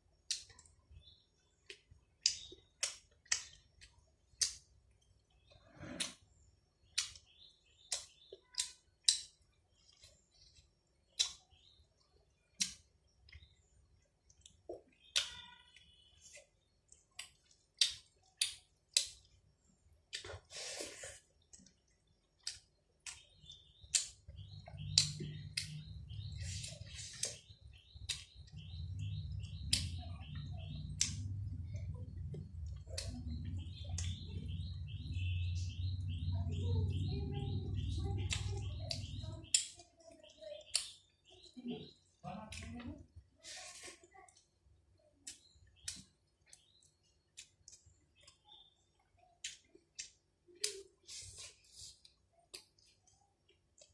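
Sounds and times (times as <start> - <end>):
birds chirping: 0.0 - 53.9
mouth clicks and lip smacks: 11.0 - 11.6, 20.1 - 28.5, 45.2 - 48.4, 49.0 - 53.9.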